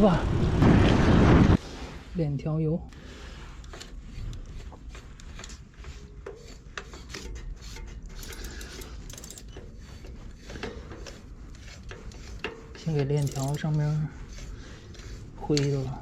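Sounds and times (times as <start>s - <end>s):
bike chain and gears turning: 3.6s - 16.0s
small clicks and rattles: 3.7s - 13.9s.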